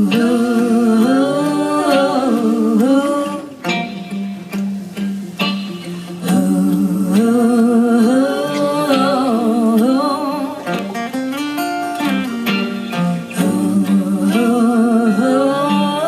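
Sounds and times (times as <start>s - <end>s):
voices singing held notes: 0.0s - 4.2s, 5.8s - 10.9s, 12.7s - 16.0s
guitars: 0.0s - 16.0s.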